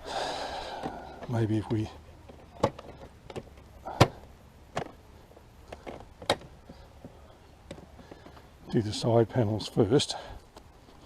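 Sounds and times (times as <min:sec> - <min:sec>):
plastic panels clicking and knocking: 0:00.8 - 0:05.0, 0:05.7 - 0:08.5.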